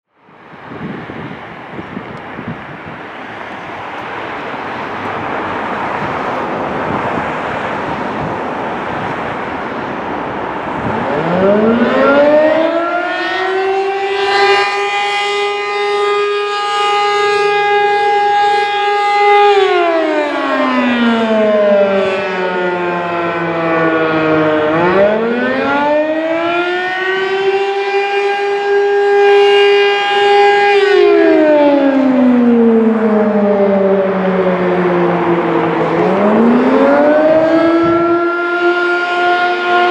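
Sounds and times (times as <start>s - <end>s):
warning siren wailing: 0.1s - 39.9s
rushing whoosh of air: 0.3s - 12.5s.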